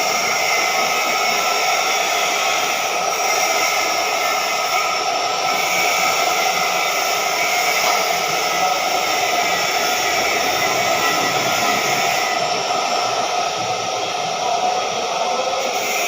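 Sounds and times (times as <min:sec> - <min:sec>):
welding arc hissing buzz: 0:00.0 - 0:13.4, 0:15.6 - 0:16.0.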